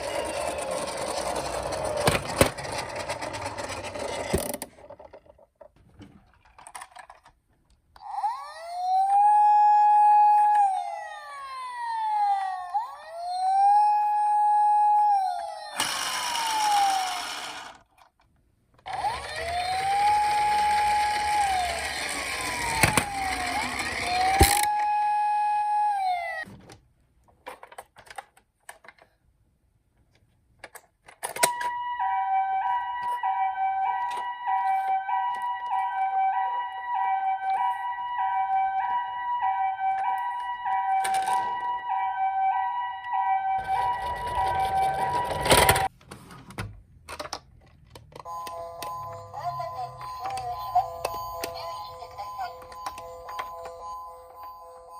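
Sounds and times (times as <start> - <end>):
toy siren wailing: 0.0 - 1.8, 8.0 - 17.8, 18.9 - 26.5, 31.5 - 45.9, 48.3 - 54.9.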